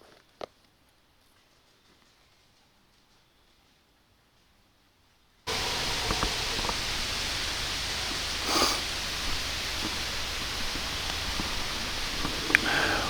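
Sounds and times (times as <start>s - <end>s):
faint clicks: 5.5s - 13.0s
steady hiss: 5.5s - 13.0s.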